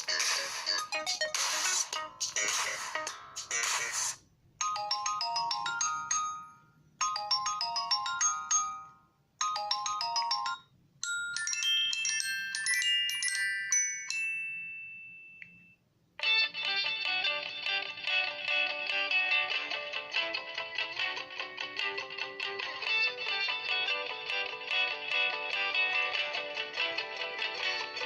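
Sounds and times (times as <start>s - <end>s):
smartphone ringtone chime melody: 0.6s - 2.5s, 4.6s - 15.8s.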